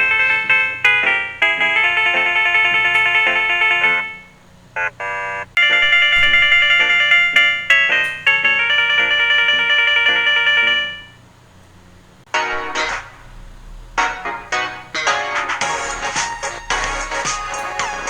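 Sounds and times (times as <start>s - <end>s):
bell-like keyboard ringtone: 0.0s - 11.2s
melodic phone ringtone: 0.0s - 11.2s.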